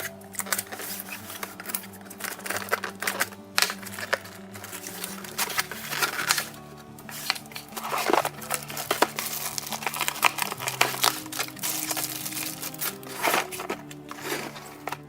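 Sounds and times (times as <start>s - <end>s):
background music: 0.0s - 15.0s
packaging crinkling: 0.0s - 15.0s.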